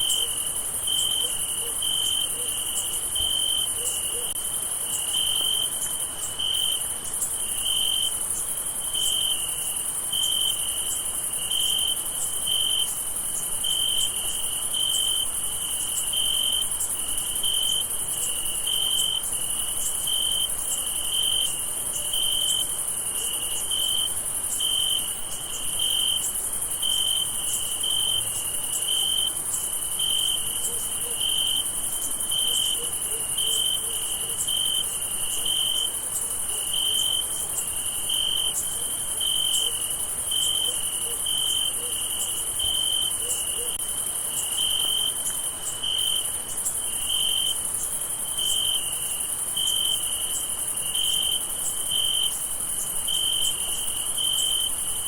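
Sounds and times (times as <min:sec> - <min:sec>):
lower cricket chirp pulsing: 0:00.0 - 0:55.0.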